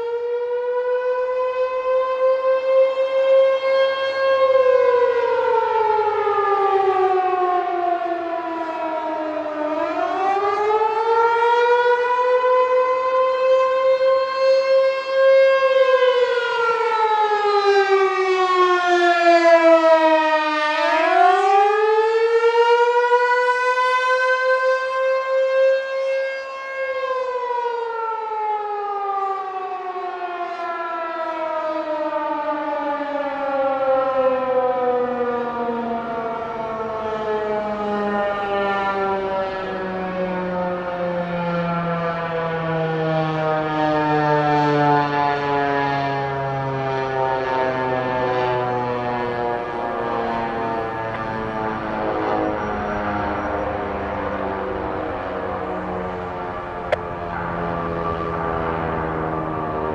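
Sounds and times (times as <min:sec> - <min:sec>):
tornado siren rising and falling: 0:00.0 - 0:59.9.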